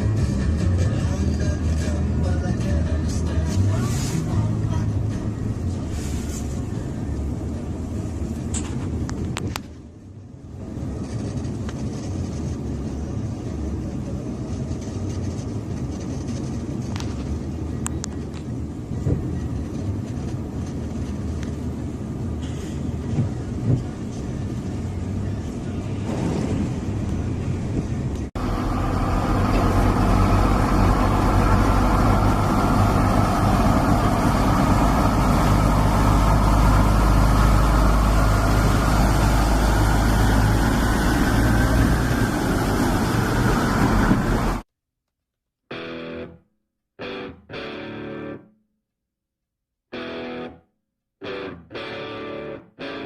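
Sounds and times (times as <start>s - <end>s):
truck diesel engine: 0.0s - 16.8s, 17.4s - 44.7s
rushing noise: 18.6s - 44.6s.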